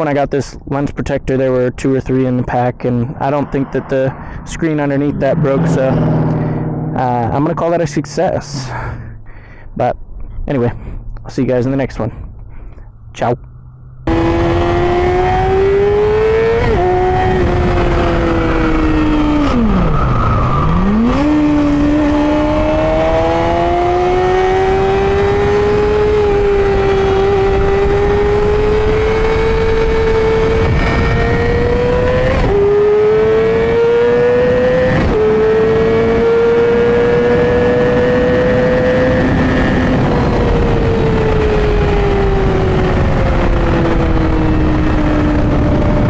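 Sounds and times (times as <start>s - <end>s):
motorcycle engine revving high: 3.4s - 7.6s, 13.8s - 46.0s.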